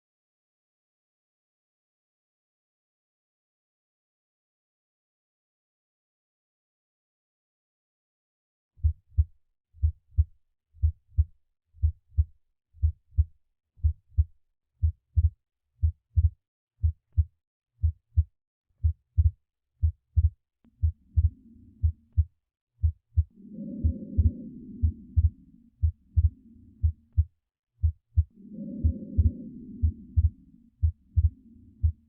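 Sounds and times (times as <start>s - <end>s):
heartbeat lub-dub: 8.8s - 32.0s
low rushing breath sound: 20.8s - 32.0s.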